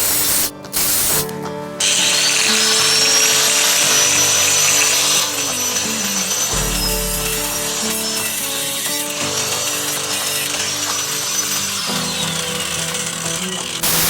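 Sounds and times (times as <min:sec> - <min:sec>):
background music: 0:00.0 - 0:14.0
power tool whining on metal: 0:00.0 - 0:14.0.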